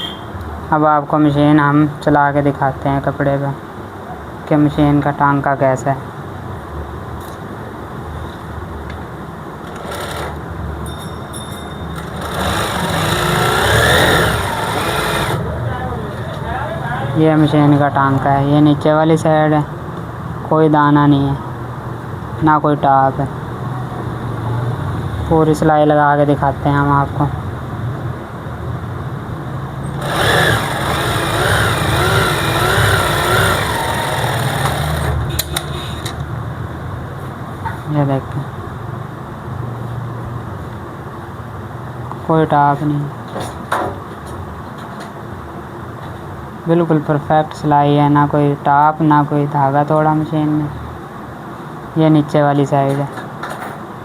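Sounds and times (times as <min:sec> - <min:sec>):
sewing machine stitching cloth: 0:09.7 - 0:10.4, 0:12.0 - 0:15.4, 0:30.0 - 0:35.5.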